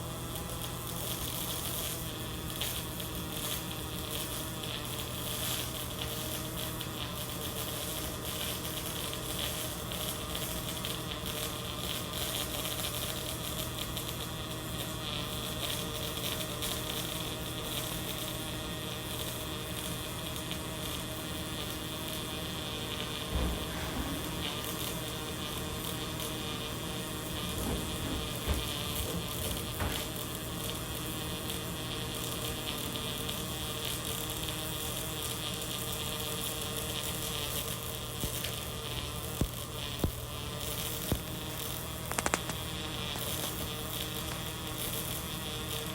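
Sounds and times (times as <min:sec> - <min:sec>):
welding arc buzzing sizzle: 0:00.0 - 0:45.9
low bump: 0:23.3 - 0:25.2, 0:27.2 - 0:30.2.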